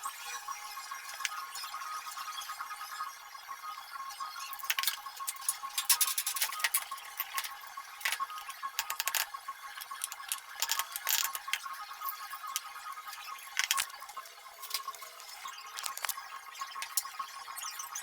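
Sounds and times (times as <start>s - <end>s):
small hard parts clicking: 4.6s - 17.2s.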